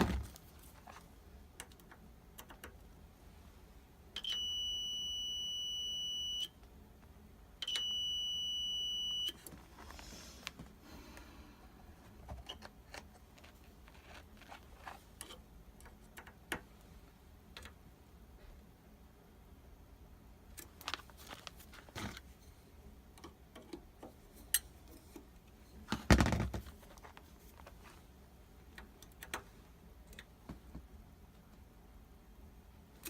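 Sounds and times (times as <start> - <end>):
multimeter continuity beep: 4.2 - 6.6, 7.6 - 9.4.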